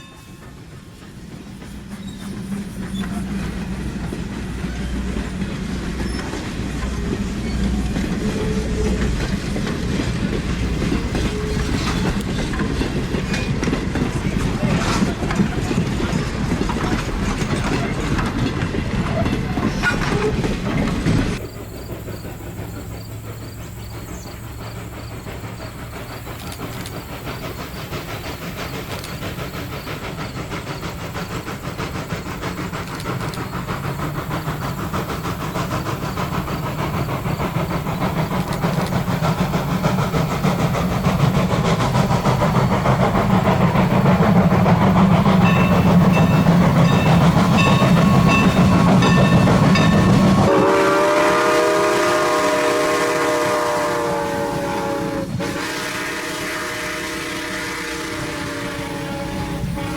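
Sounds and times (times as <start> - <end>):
steam train running gear on rails: 0.0 - 59.9
steam locomotive whistle: 7.0 - 9.2, 11.0 - 12.2, 43.2 - 59.9.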